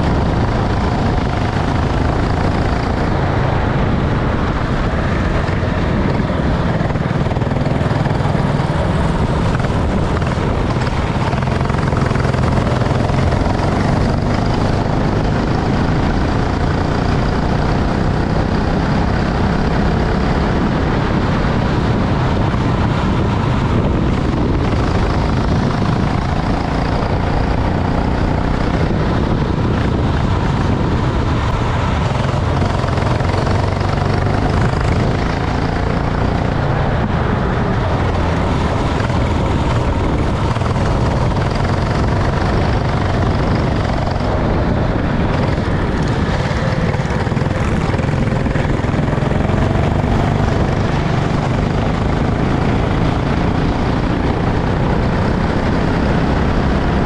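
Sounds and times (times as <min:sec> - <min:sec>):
kart engine droning: 0:00.0 - 0:57.0.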